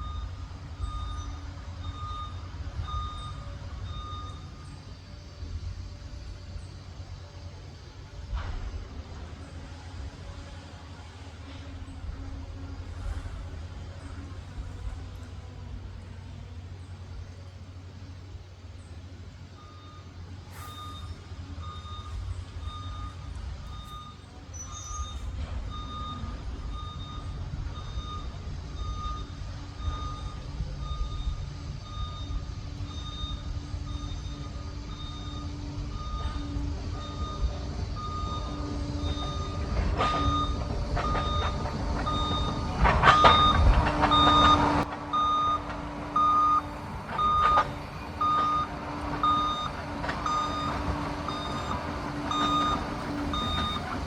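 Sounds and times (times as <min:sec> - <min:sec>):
reverse alarm beeping: 0:00.0 - 0:05.1, 0:19.5 - 0:54.0
diesel engine running: 0:00.0 - 0:54.0
track noise: 0:00.0 - 0:54.0.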